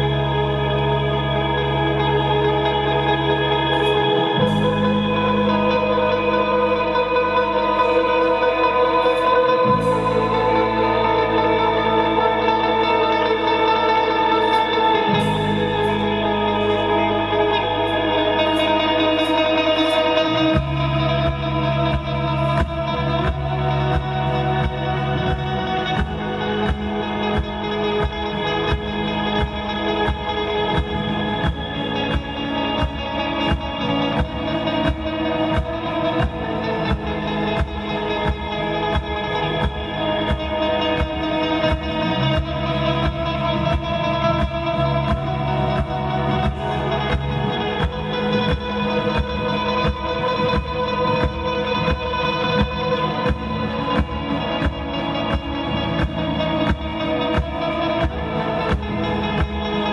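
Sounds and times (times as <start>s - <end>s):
bass guitar: 0.0s - 59.9s
electric guitar with effects: 0.0s - 59.9s
organ-like chords: 0.0s - 59.9s
steady drum beat: 20.6s - 59.9s.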